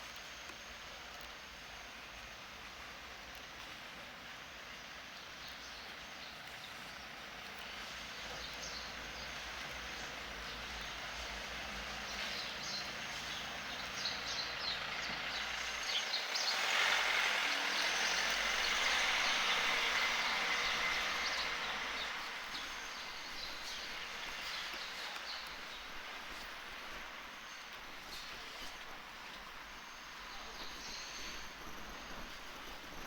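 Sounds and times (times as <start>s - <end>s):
vehicle rushing past: 14.2s - 25.0s.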